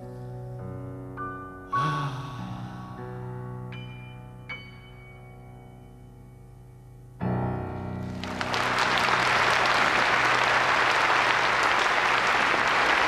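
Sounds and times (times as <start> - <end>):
piano chord ringing: 2.5 - 8.2
audience applause: 8.0 - 13.0.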